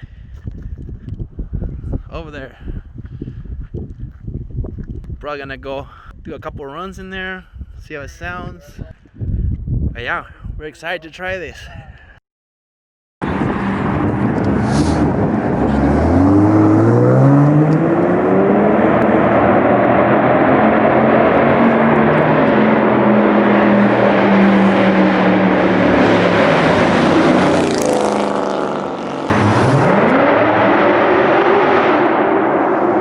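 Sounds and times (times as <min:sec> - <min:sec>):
rough exhaust note: 0:13.2 - 0:32.9
car engine accelerating: 0:13.2 - 0:33.0.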